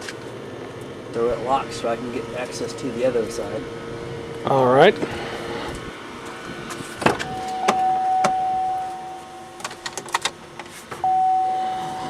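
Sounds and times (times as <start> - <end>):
car warning chime beeping: 7.2 - 12.0.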